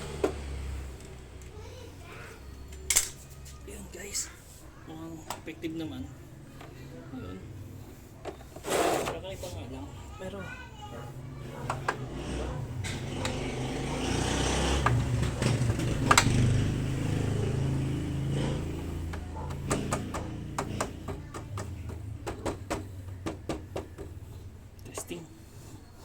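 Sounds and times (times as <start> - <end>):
motorcycle engine running: 0.0 - 1.6, 11.2 - 26.0.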